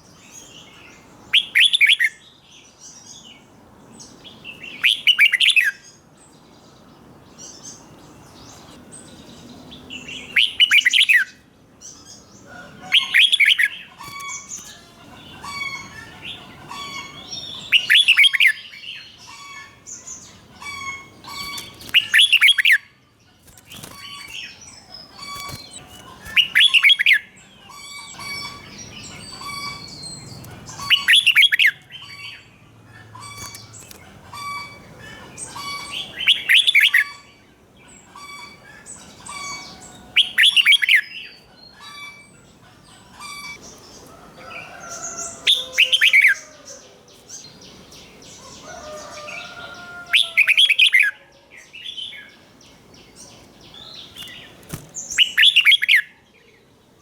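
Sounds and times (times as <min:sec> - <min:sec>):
bird singing song phrases: 0:00.0 - 0:57.0
soft bird chirps: 0:11.9 - 0:51.1.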